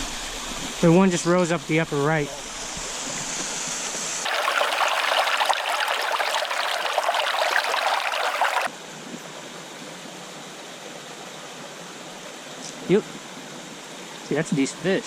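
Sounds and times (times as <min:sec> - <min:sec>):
creek water rushing and splashing: 0:04.2 - 0:08.7
steady stream water rushing: 0:04.2 - 0:08.7.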